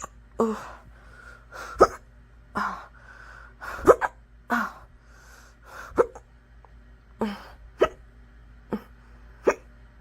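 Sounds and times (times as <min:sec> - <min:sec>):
person hiccuping: 0:00.0 - 0:00.2, 0:01.8 - 0:02.0, 0:03.8 - 0:04.2, 0:05.9 - 0:06.3, 0:07.8 - 0:08.0, 0:08.7 - 0:09.7.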